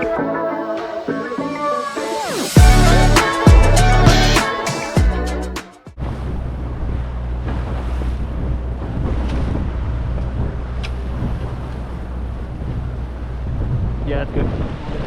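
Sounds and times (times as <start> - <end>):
boat engine humming: 2.6 - 5.6.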